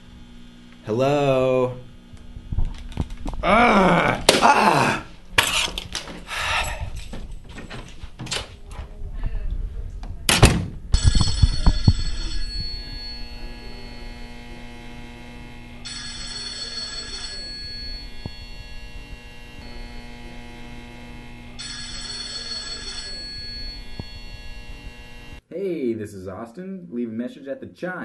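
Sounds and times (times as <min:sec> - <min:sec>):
electrical hum: 0:00.0 - 0:25.4
telephone ringing: 0:11.0 - 0:25.4.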